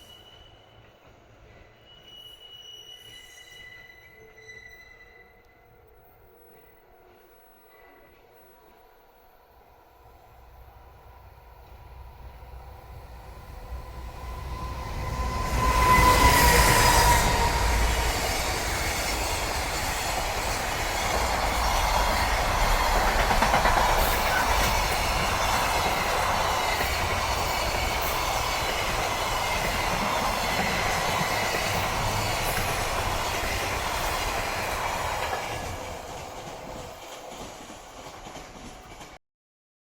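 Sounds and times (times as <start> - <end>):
train wheels clattering on rails: 13.7 - 39.2.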